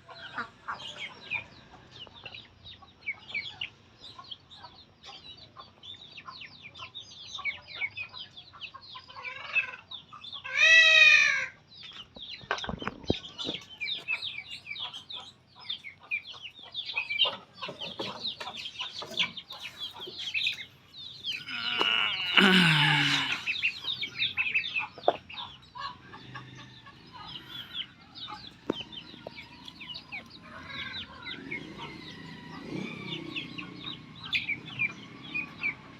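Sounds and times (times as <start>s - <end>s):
loud animal squealing call: 21.4s - 23.9s.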